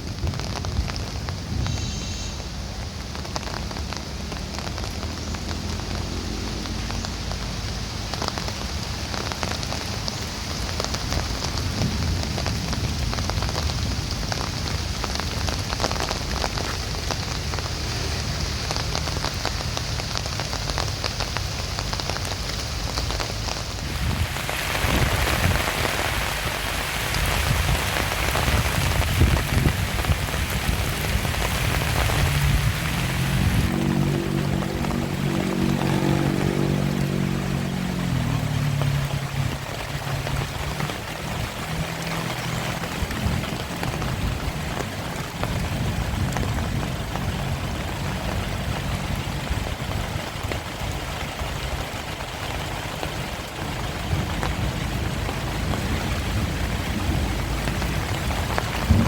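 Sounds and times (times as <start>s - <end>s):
heavy rain hissing: 0.0s - 59.0s
low rumble: 53.6s - 59.0s.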